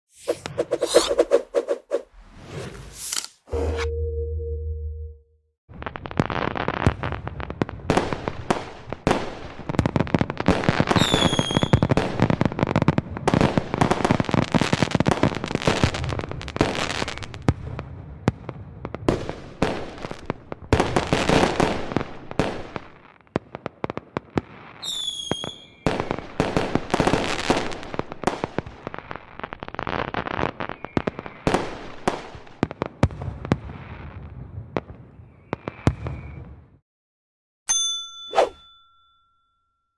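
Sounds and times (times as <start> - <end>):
fireworks crackling and popping: 5.7 - 17.8, 18.8 - 34.2
firework whistle: 11.0 - 11.9, 24.8 - 25.9.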